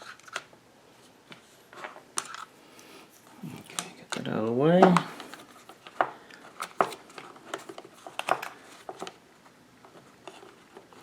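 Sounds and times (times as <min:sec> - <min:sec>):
hands handling wires and plastic parts: 0:00.0 - 0:00.6, 0:01.2 - 0:02.5, 0:03.2 - 0:11.0.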